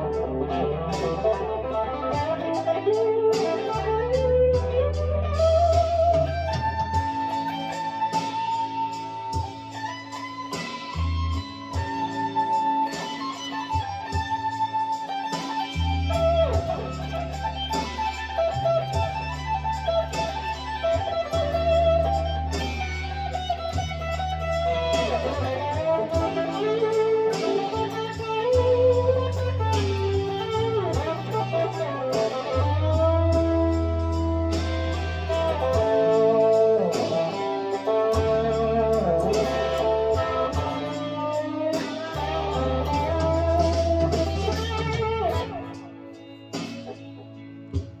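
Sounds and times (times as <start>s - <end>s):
low bass notes: 0.0s - 7.4s, 15.8s - 45.8s
electric guitar lead with bends: 0.0s - 48.0s.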